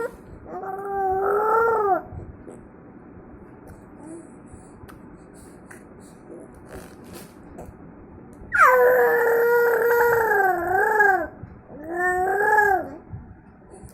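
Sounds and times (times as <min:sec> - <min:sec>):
baby wailing cry: 0:08.6 - 0:13.0.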